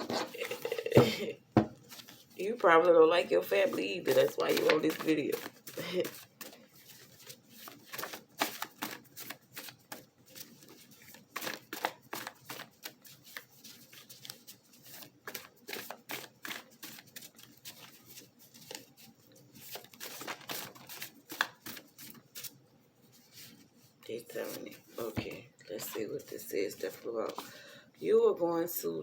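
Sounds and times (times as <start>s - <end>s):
cards being shuffled: 3.4s - 23.7s.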